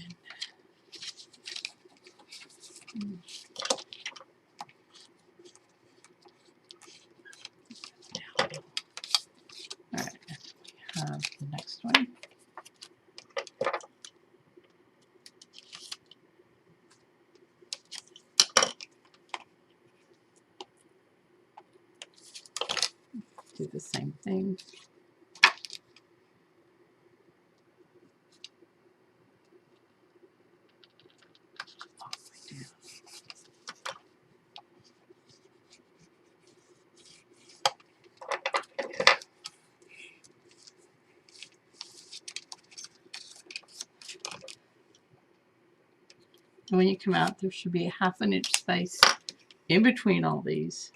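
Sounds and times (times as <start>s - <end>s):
paper and chipboard rustling: 0.3s - 14.0s, 30.8s - 34.0s, 34.8s - 44.6s.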